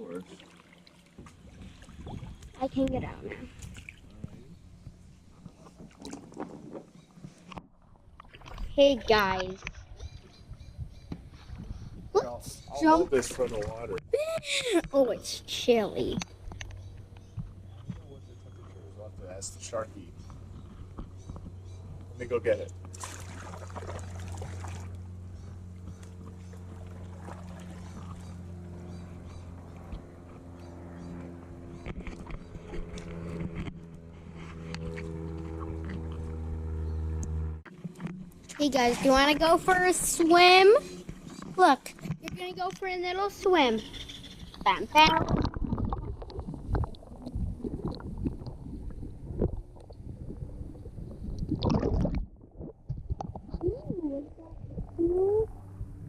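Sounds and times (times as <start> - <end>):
water sloshing against kayak: 0.0 - 12.1, 22.8 - 36.2, 37.7 - 56.0
low mechanical hum: 0.0 - 56.0.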